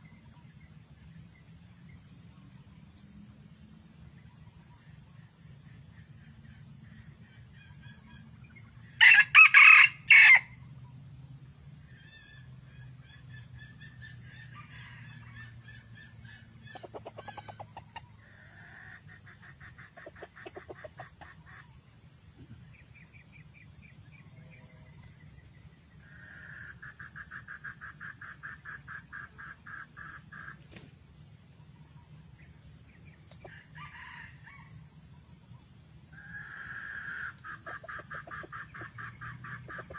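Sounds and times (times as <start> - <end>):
high insect drone: 0.0 - 39.9
rooster crowing: 9.0 - 10.5, 33.4 - 34.8.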